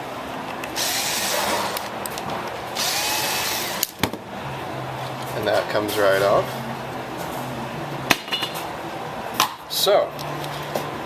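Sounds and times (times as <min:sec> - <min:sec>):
electric screwdriver running: 0:00.8 - 0:01.9, 0:02.8 - 0:03.9.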